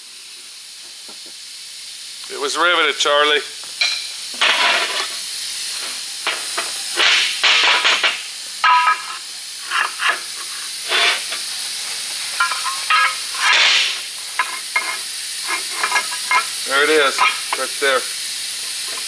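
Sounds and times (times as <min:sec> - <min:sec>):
steady hiss: 0:00.0 - 0:19.0
scraping and rubbing on metal: 0:04.4 - 0:05.2, 0:08.7 - 0:11.5, 0:12.4 - 0:17.7.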